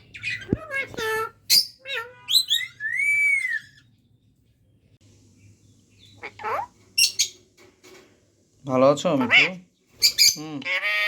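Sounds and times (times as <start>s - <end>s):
high parrot chirps: 0.0s - 4.0s, 6.0s - 7.4s, 9.2s - 11.0s
parrot calling: 0.0s - 4.0s, 6.0s - 7.4s, 9.0s - 11.0s.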